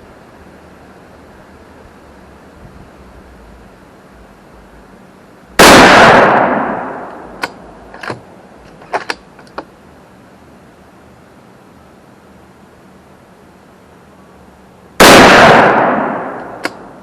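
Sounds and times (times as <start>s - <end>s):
rifle shot: 5.6s - 7.6s, 15.0s - 17.0s.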